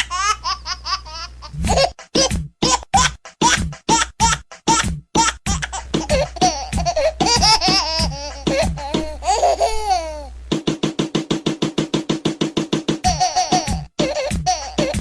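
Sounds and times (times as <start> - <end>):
children laughing: 5.6 - 10.1.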